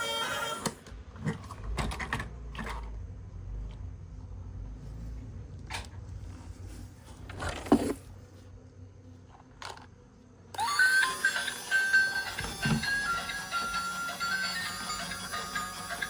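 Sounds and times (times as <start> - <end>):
background music bright melody: 10.6 - 16.0.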